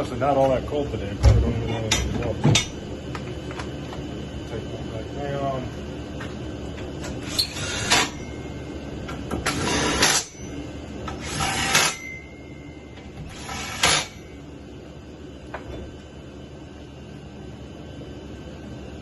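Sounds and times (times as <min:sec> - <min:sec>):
scraping rattling mechanical strokes: 0:07.1 - 0:08.3, 0:09.4 - 0:10.5, 0:11.1 - 0:12.2.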